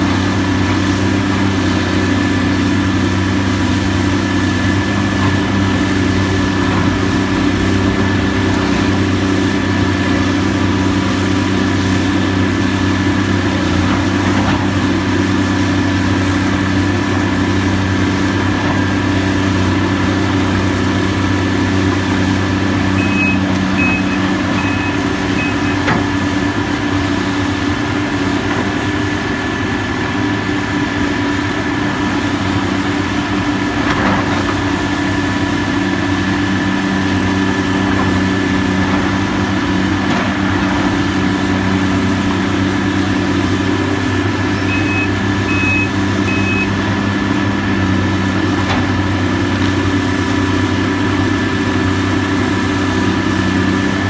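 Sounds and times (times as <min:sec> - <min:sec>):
diesel engine running: 0:00.0 - 0:54.0
backup alarm beeping: 0:23.0 - 0:25.9, 0:44.6 - 0:46.8.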